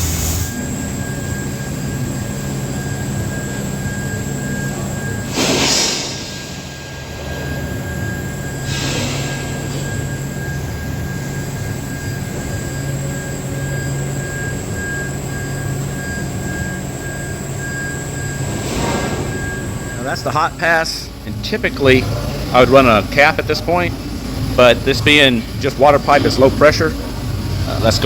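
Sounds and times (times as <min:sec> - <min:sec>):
welding arc hissing: 0:00.0 - 0:00.6, 0:05.3 - 0:06.7
welding arc buzzing hum: 0:00.0 - 0:28.0.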